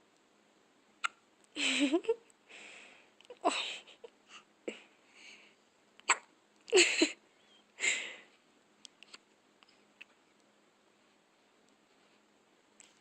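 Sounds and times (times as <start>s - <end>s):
baby hiccuping: 1.0s - 1.2s, 6.0s - 6.3s.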